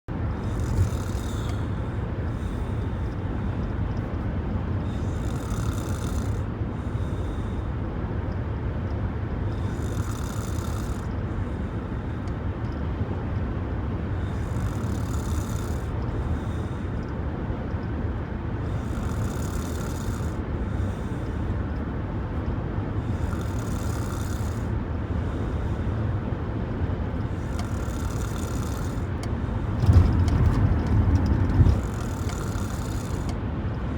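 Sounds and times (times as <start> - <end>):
person snoring: 0.4 - 1.7, 5.0 - 6.4, 9.6 - 11.1, 23.2 - 24.7, 27.4 - 29.1, 31.7 - 33.4
steady low rumble: 24.4 - 33.9.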